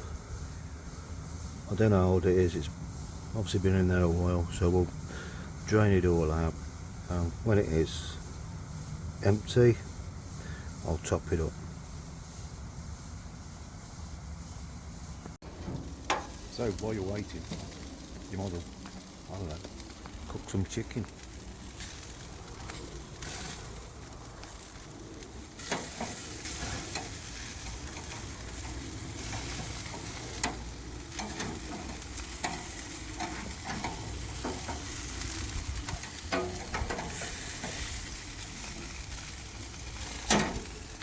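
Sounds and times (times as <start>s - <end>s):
chicken sizzling in a frying pan: 15.9s - 41.0s.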